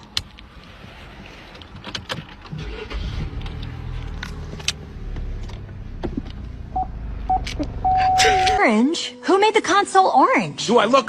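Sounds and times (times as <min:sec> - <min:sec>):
engine starting and running: 0:00.0 - 0:08.6.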